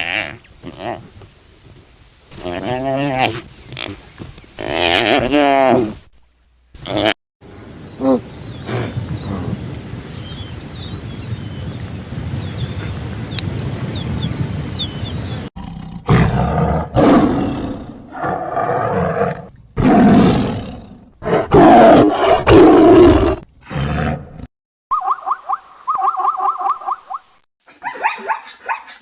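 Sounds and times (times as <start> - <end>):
big cat roaring: 15.6 - 24.5.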